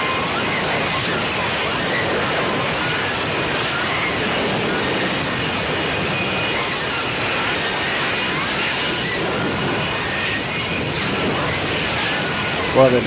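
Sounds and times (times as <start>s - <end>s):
faint wavering whine: 0.0s - 13.0s
jet engine roar: 0.0s - 13.0s.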